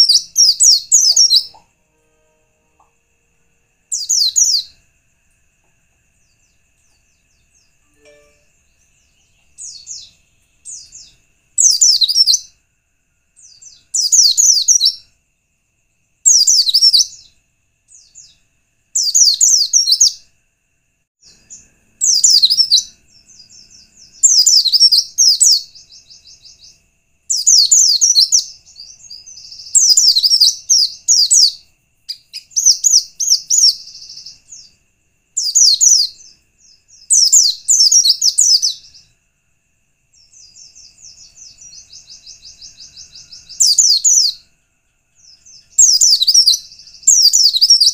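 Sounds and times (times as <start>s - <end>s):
bird warbling song: 0.0s - 1.7s, 3.9s - 4.8s, 6.2s - 12.5s, 16.3s - 18.4s, 21.3s - 34.8s, 40.2s - 44.4s, 45.2s - 47.9s
faint single chirps: 6.8s - 12.4s.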